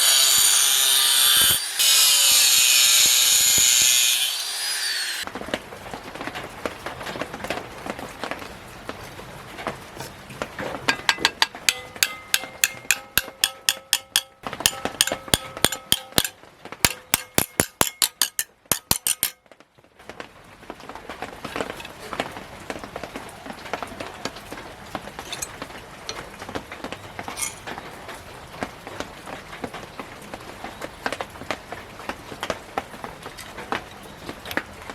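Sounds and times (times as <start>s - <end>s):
hammer striking ringing metal plate: 10.9s - 19.4s, 25.3s - 25.5s.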